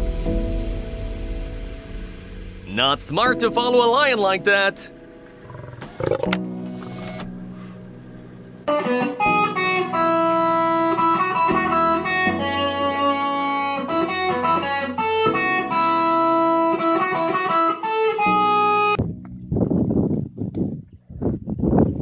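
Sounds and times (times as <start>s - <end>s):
plucked guitar music: 3.3s - 19.4s.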